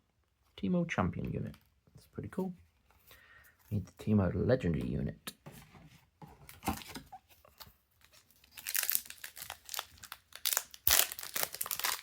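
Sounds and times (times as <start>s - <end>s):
foil wrapper crinkling: 8.1s - 12.0s.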